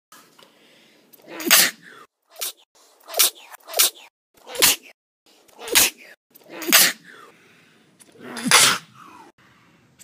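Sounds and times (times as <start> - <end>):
person sneezing: 1.2 - 2.5, 5.6 - 7.3, 8.2 - 9.3.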